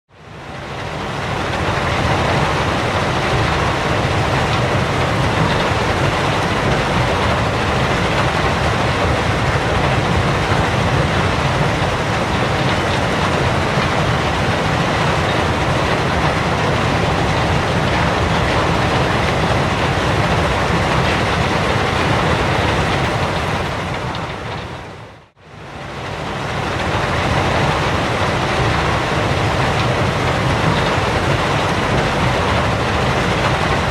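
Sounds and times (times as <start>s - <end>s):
machinery rumble: 0.3s - 33.9s.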